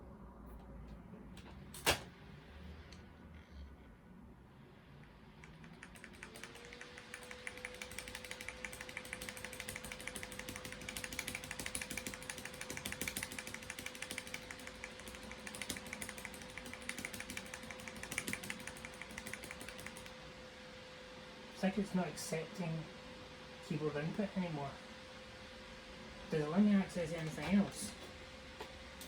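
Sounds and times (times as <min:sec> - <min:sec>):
computer fan humming: 0:04.5 - 0:29.0
rapid keyboard key presses: 0:05.4 - 0:20.1.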